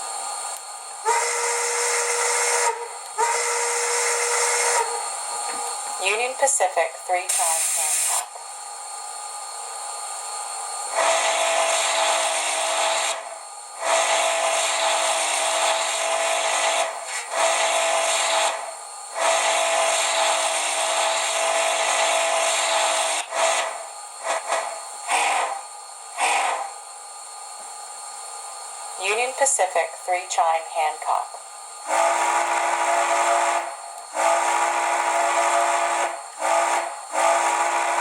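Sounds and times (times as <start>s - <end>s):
steam whistle through small speaker: 1.0s - 5.0s, 10.9s - 13.2s, 13.8s - 18.6s, 31.9s - 38.0s.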